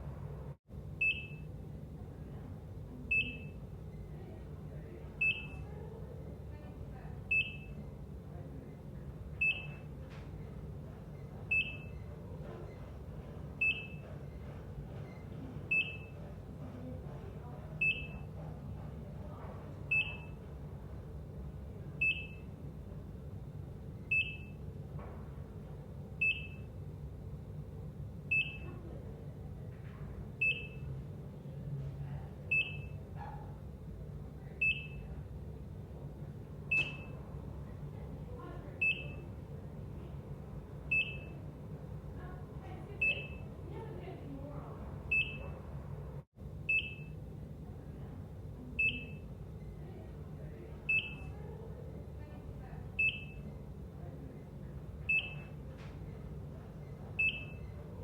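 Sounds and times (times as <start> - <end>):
heart monitor beeping: 1.0 - 1.5, 3.0 - 4.1, 5.2 - 5.6, 7.3 - 8.0, 9.3 - 20.5, 22.0 - 22.6, 24.0 - 24.6, 26.2 - 26.8, 28.3 - 28.8, 30.4 - 30.9, 32.5 - 33.6, 34.6 - 35.3, 36.7 - 37.2, 38.8 - 39.4, 40.9 - 41.4, 42.9 - 43.6, 45.1 - 45.6, 46.7 - 47.2, 48.8 - 49.8, 50.9 - 51.3, 52.9 - 53.6, 55.0 - 57.9.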